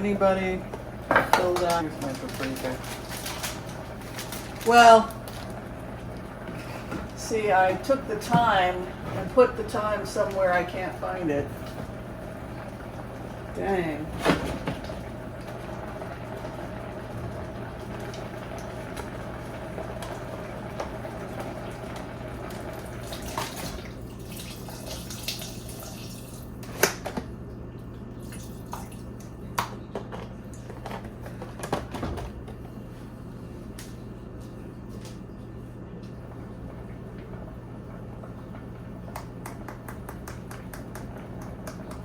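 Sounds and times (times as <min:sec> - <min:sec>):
low steady hum: 0:00.0 - 0:42.0.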